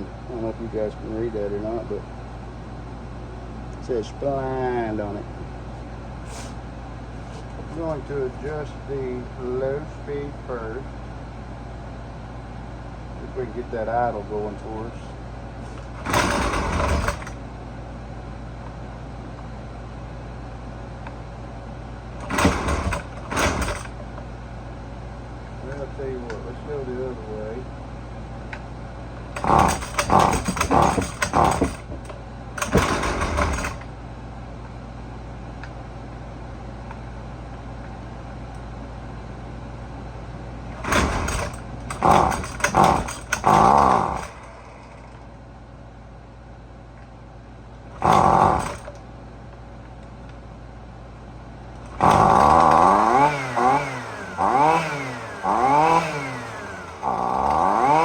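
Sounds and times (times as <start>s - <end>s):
string trimmer engine cranking: 15.6s - 17.4s, 22.2s - 24.0s, 29.4s - 33.9s, 40.8s - 45.2s, 48.0s - 49.0s, 51.8s - 58.0s
string trimmer engine revving: 15.7s - 17.4s, 22.2s - 23.9s, 29.4s - 32.0s, 32.6s - 33.9s, 40.8s - 44.9s, 48.0s - 48.9s, 51.9s - 58.0s.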